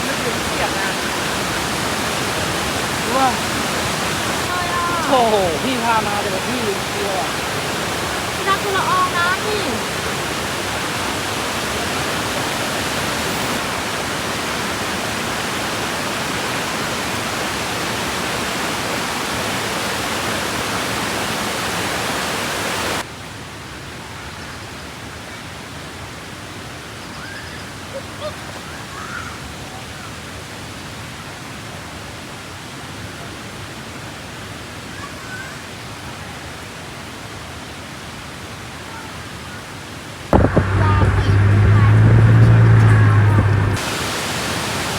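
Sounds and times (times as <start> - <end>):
waterfall rushing: 0.0 - 23.0, 40.3 - 44.9.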